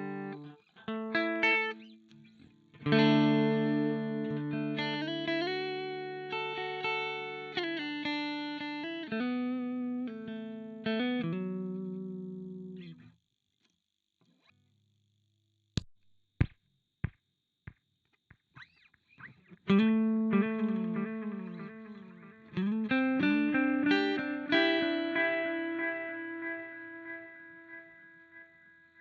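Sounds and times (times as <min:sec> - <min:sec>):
electric guitar chords with delay: 0:00.0 - 0:02.0, 0:02.7 - 0:12.9, 0:19.7 - 0:29.0.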